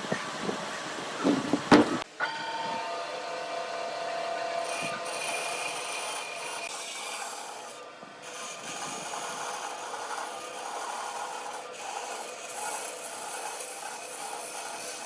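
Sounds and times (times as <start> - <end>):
hand tool rasping against wood: 4.8 - 15.0.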